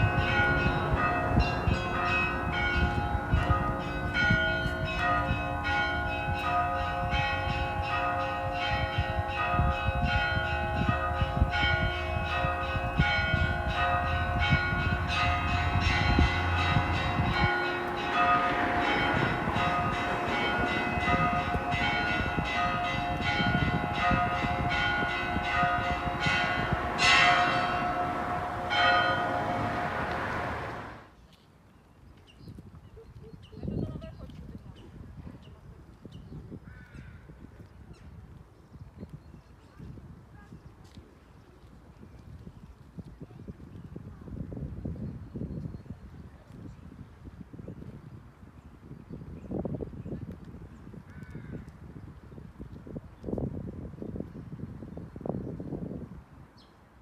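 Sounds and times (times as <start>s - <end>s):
church bells pealing: 0.0s - 31.0s.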